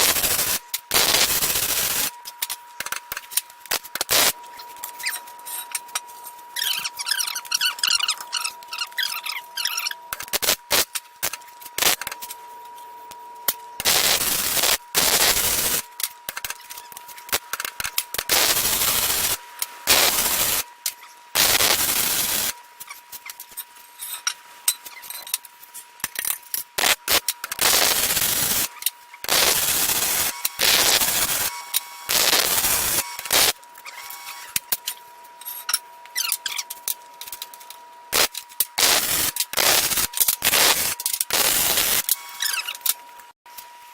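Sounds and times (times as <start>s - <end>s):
welder crackling and spattering: 0.0s - 4.4s, 10.1s - 12.2s, 13.8s - 16.6s, 17.2s - 20.7s, 21.4s - 22.6s, 26.8s - 34.6s, 38.1s - 42.7s.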